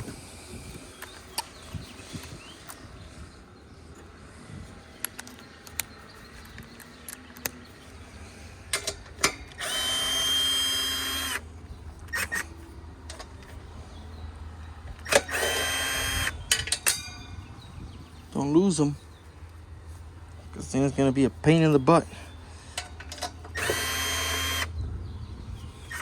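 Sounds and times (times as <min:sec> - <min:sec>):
tools and nuts clicking: 0:08.7 - 0:11.4, 0:15.0 - 0:17.3, 0:22.7 - 0:24.7
power driver whining: 0:08.7 - 0:17.6, 0:21.6 - 0:26.0.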